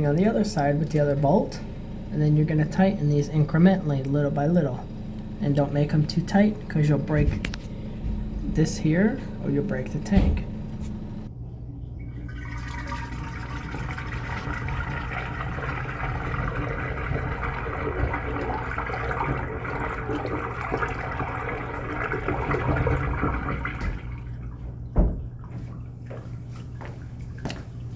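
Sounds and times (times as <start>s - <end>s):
toilet water rushing: 12.2s - 24.7s.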